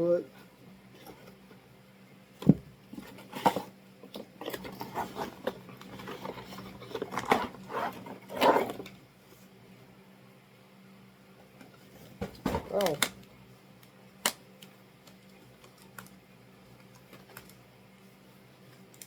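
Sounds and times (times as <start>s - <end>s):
packaging rustling and clicking: 4.4s - 9.0s.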